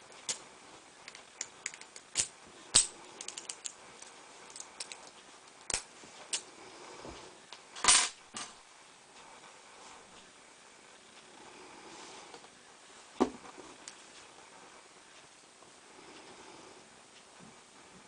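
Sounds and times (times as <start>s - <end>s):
lock picks clicking and scraping: 1.1s - 5.1s.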